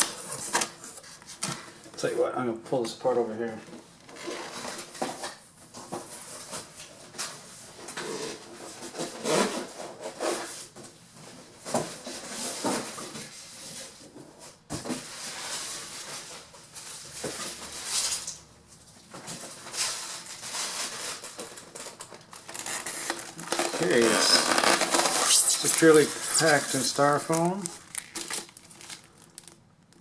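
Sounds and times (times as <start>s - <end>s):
styrofoam packing rustling: 4.1s - 30.0s
cardboard box pulled open: 22.5s - 27.7s.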